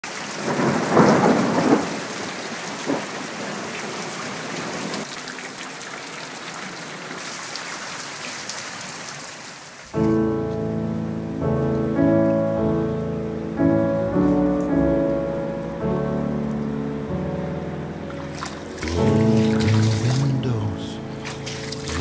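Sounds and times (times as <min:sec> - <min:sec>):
steady rain: 0:00.0 - 0:22.0
thunder clap: 0:00.4 - 0:02.0
music: 0:10.0 - 0:22.0.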